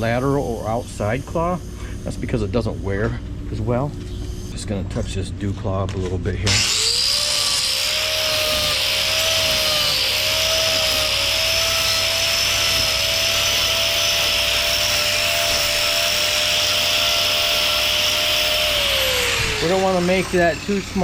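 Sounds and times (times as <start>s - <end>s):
angle grinder whining: 6.4s - 21.0s.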